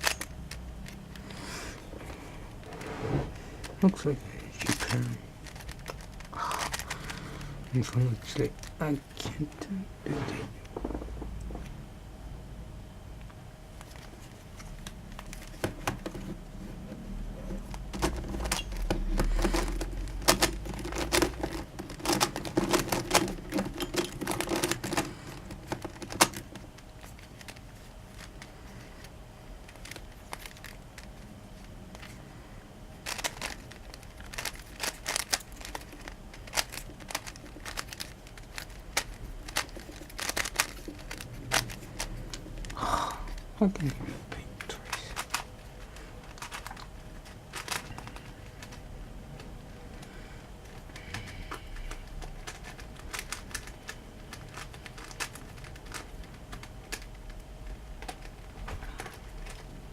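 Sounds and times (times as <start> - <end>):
plastic puzzle clicking: 33.0 - 43.4, 44.6 - 45.5, 46.2 - 48.8, 50.7 - 57.3.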